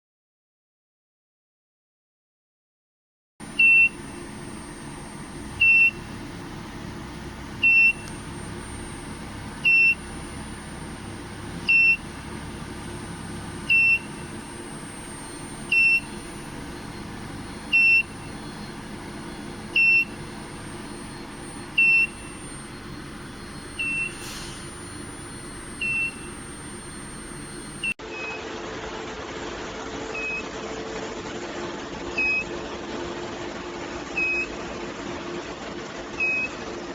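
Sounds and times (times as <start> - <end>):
faint high whine: 3.4 - 28.0
steady machine hum: 3.4 - 36.9
short high electronic beep: 11.6 - 28.4.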